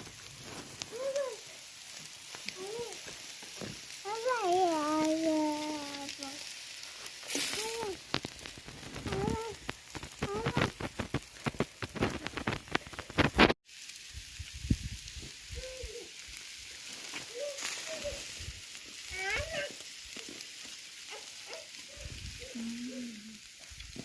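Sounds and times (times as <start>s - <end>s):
meat sizzling over fire: 0.0s - 24.0s
sharp pops: 7.3s - 13.6s.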